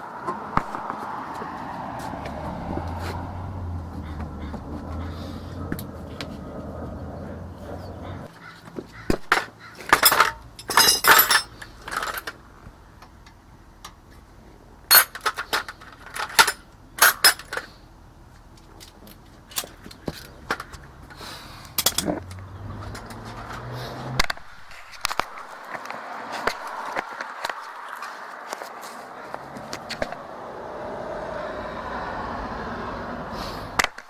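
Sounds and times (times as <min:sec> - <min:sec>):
metallic clinks of tools: 0:10.0 - 0:12.3.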